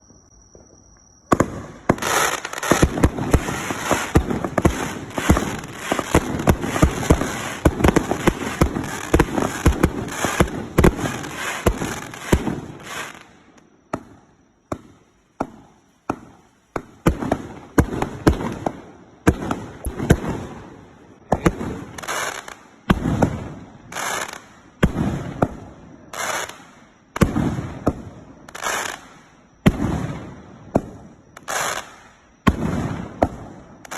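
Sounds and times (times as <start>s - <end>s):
firework battery firing: 1.3s - 13.3s.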